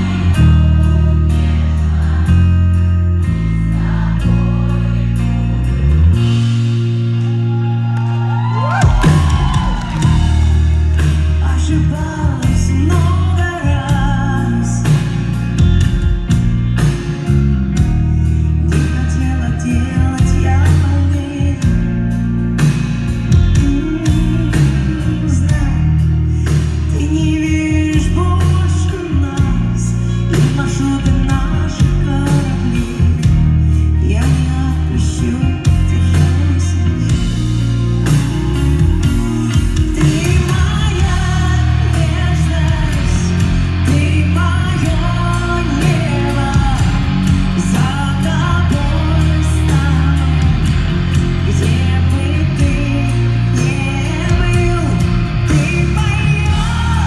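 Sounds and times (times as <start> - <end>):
guitar: 0.0 - 57.0
heavy bass line: 0.0 - 57.0
pop-rock band playing: 0.0 - 57.0
steady drum beat: 8.7 - 18.3, 35.7 - 57.0
woman singing: 11.4 - 15.1, 18.6 - 22.0, 23.3 - 26.1, 26.9 - 33.4, 34.0 - 37.4, 39.4 - 57.0.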